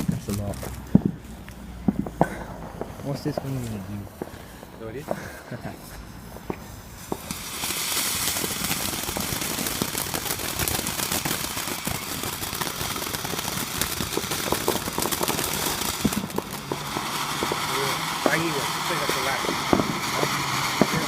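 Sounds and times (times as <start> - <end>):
firework hissing and crackling: 0.0 - 21.0.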